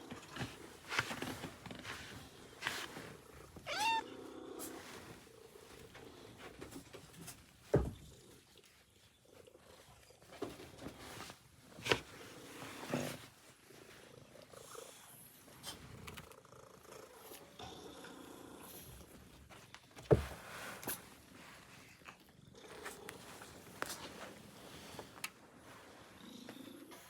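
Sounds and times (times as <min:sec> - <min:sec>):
cat purring: 0:02.2 - 0:06.4, 0:12.2 - 0:19.4, 0:21.4 - 0:25.0, 0:25.7 - 0:27.0.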